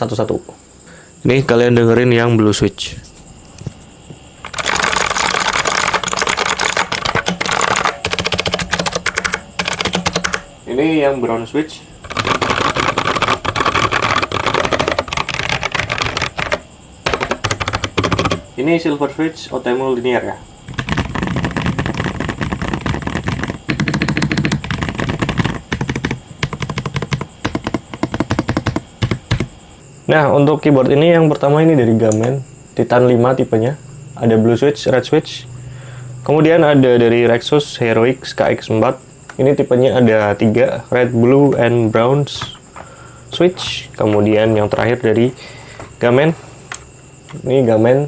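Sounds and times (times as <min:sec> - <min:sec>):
rapid typing on mechanical keyboard: 0:04.4 - 0:10.5, 0:12.0 - 0:18.5, 0:20.7 - 0:29.5.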